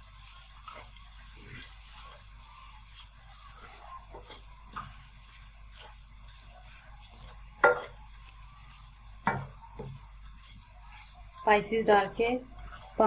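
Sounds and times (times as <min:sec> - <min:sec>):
light scraping in a pan: 0:00.0 - 0:13.0
meat sizzling in a pan: 0:00.0 - 0:13.0
stirrer knocking on pan: 0:07.2 - 0:08.0, 0:09.2 - 0:10.6.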